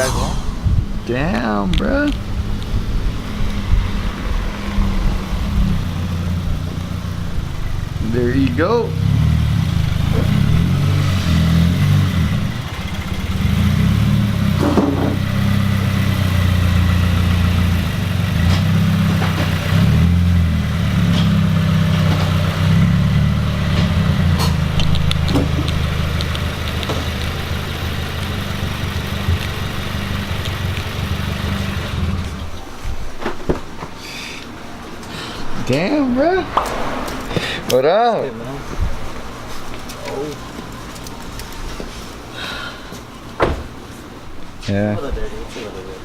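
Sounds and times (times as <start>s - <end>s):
car engine running: 4.4s - 32.7s.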